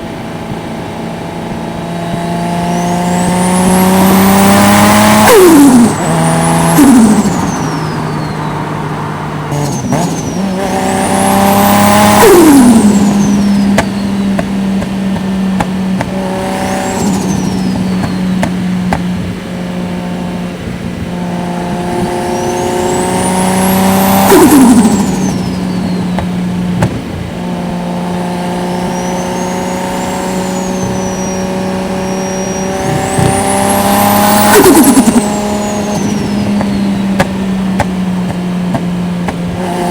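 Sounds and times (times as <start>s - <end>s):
car engine cruising: 0.0s - 39.9s
turbo flutter whistle: 2.7s - 8.6s, 9.5s - 14.5s, 16.1s - 18.7s, 22.0s - 26.4s, 28.8s - 37.6s.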